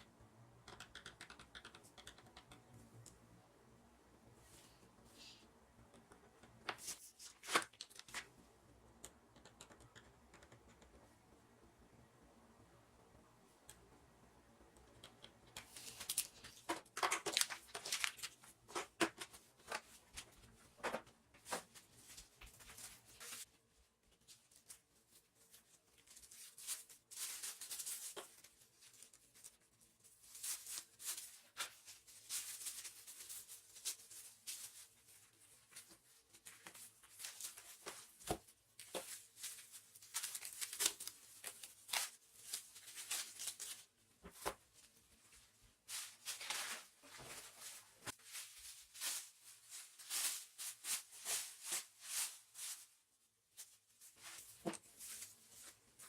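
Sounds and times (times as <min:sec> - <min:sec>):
plastic packaging crinkling: 0:15.7 - 0:18.9
plastic wrap rustling: 0:15.7 - 0:20.5, 0:24.2 - 0:56.0.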